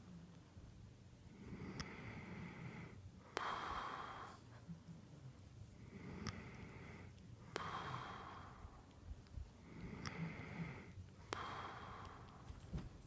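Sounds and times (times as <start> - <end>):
man snoring: 9.6 - 11.9.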